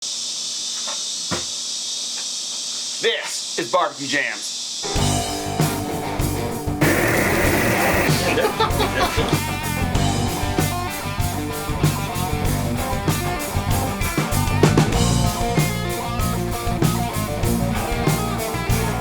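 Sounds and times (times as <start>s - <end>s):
drum kit beat: 4.8s - 19.0s
electric guitars: 4.8s - 19.0s
bass guitar: 4.9s - 19.0s.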